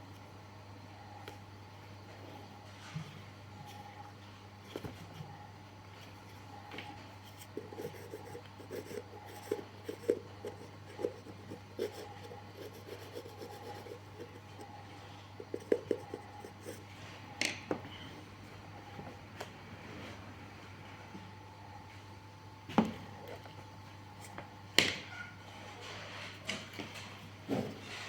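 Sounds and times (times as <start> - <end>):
steady low hum: 0.0 - 24.8.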